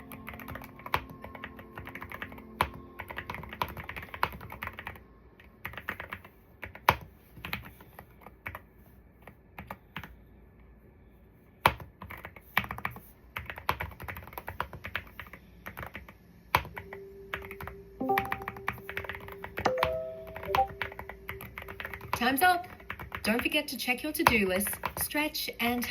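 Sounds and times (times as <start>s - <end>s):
held musical tones: 16.7s - 23.7s.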